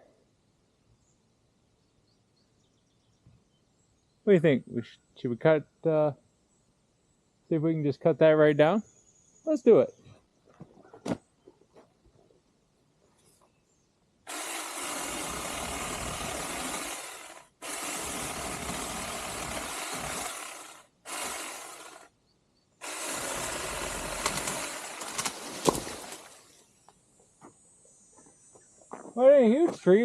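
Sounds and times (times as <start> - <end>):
mini chainsaw cutting: 14.3 - 22.1, 22.8 - 26.5.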